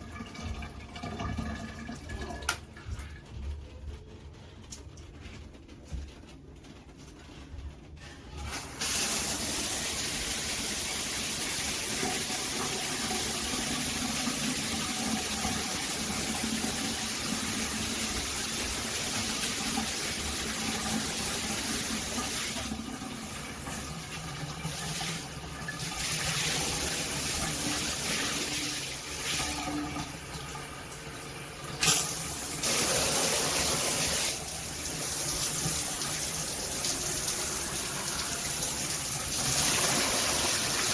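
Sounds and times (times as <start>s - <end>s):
shower water spraying: 8.4s - 40.9s.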